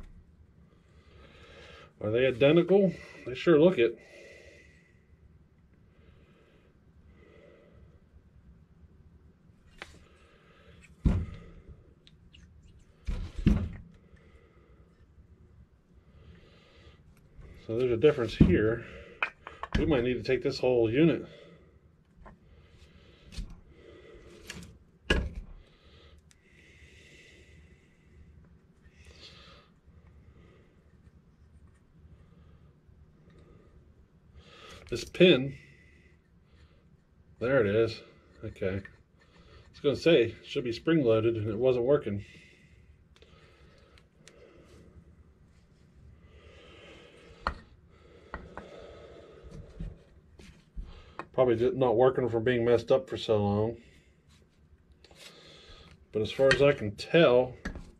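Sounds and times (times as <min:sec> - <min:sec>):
faint rubbing of small parts: 0:16.0 - 0:21.3, 0:34.6 - 0:57.9
parts clicking and knocking: 0:19.2 - 0:20.0.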